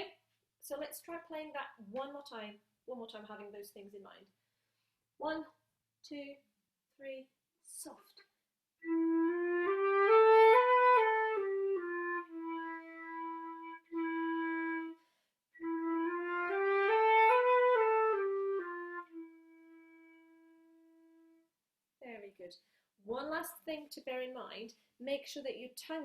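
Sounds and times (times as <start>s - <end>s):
flute playing slurred phrase: 8.8s - 15.0s, 15.6s - 21.0s.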